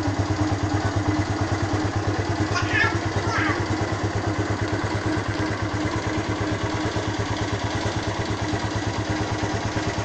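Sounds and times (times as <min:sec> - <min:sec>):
motorcycle engine idling: 0:00.0 - 0:10.0.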